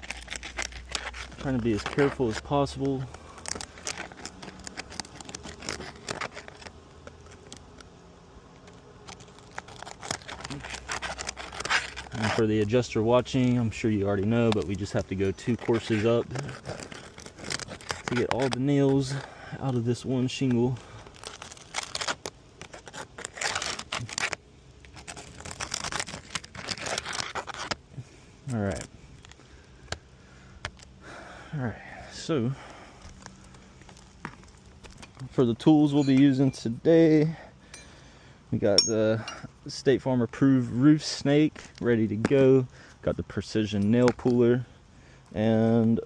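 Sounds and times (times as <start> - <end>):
roof shingles being pried apart: 0.0 - 7.8, 8.6 - 12.4, 14.4 - 19.5, 20.8 - 27.9.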